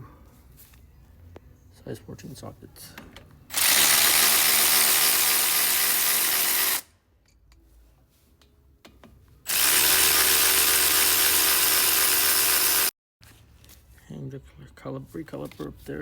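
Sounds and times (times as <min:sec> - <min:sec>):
power tool whirring: 0:03.5 - 0:06.9, 0:09.5 - 0:12.9.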